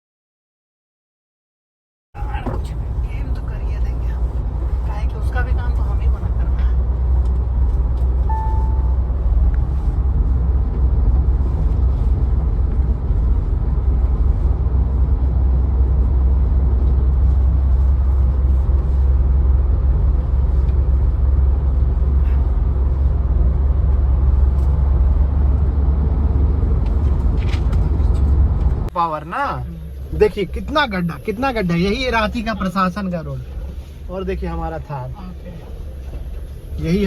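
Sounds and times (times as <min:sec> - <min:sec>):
deep engine and road rumble: 0:02.2 - 0:37.0
high beep: 0:08.3 - 0:09.2.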